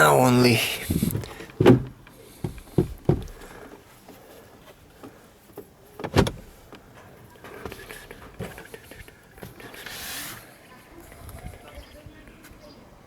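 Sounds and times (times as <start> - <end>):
heavier plastic knock: 1.1 - 3.5.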